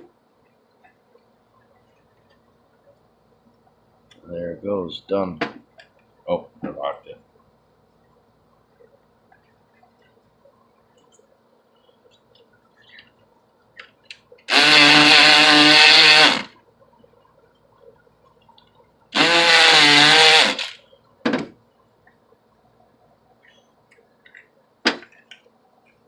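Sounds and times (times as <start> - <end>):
electric lockpick gun buzzing: 14.5 - 16.6, 19.2 - 20.8.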